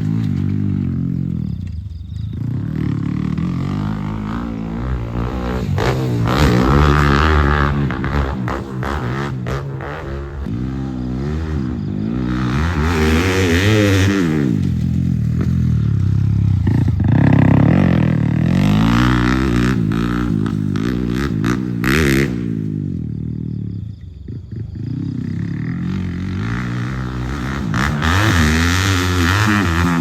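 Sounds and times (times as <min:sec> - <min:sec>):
motorcycle engine revving: 0:00.0 - 0:30.0.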